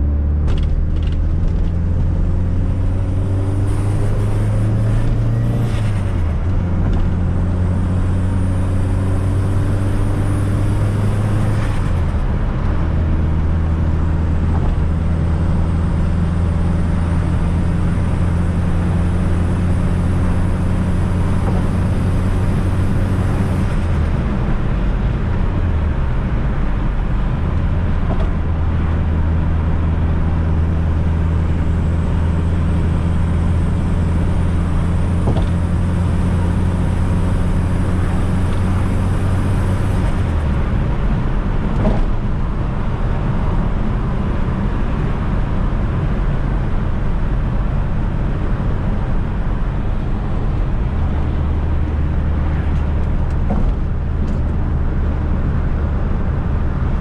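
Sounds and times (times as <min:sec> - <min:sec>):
tyre and road noise: 0:00.0 - 0:57.0.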